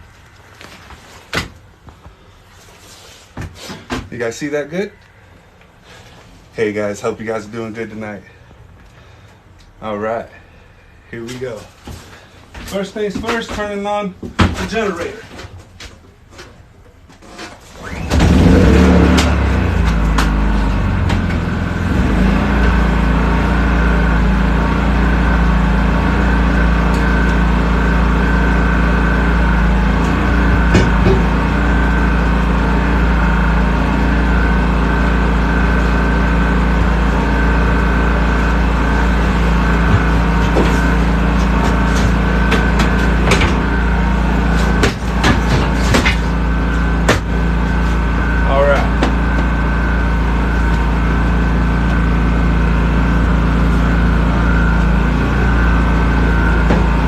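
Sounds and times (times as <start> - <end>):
generator engine running: 17.8 - 57.0.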